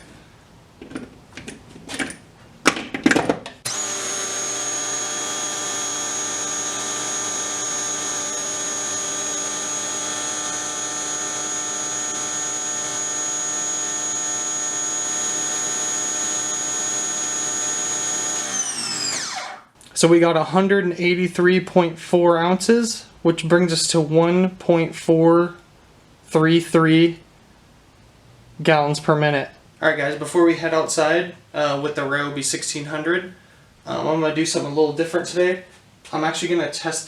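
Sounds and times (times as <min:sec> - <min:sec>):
pressure washer whine: 0:03.7 - 0:19.7.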